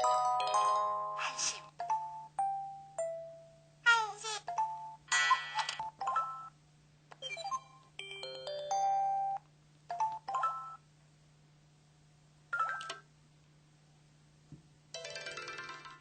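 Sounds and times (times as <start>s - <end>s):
electronic chimes and bleeps: 7.2s - 7.8s.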